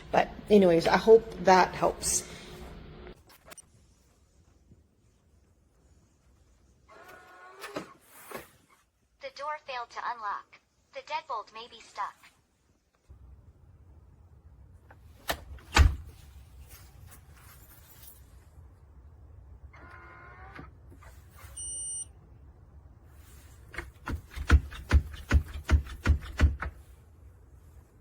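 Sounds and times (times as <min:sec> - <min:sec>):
short electronic beep: 0:21.6 - 0:22.1
knocking on a door: 0:23.9 - 0:26.8.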